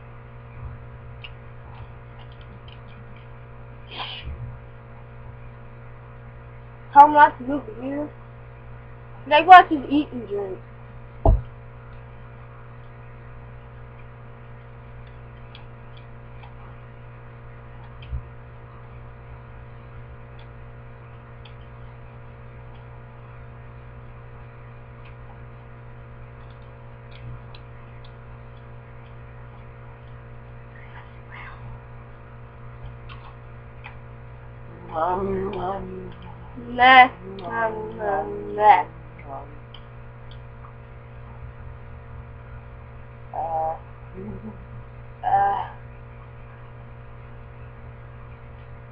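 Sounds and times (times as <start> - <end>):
electrical mains hum: 0.0 - 48.9
soft thump: 11.2 - 11.5.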